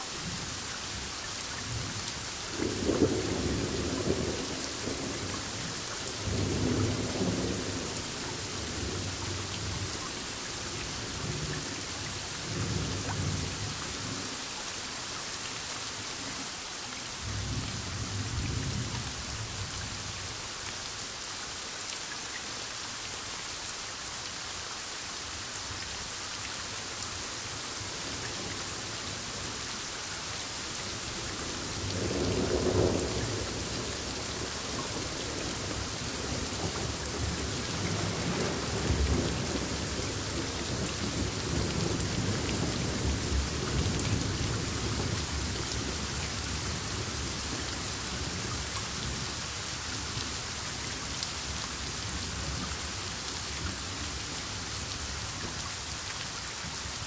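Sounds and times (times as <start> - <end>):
heavy rain: 0.0 - 57.0.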